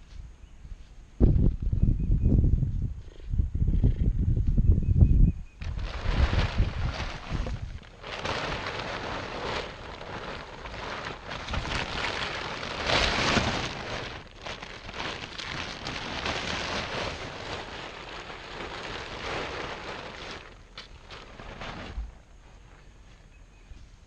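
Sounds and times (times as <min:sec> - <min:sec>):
compost rustling and scraping: 0:05.6 - 0:24.0.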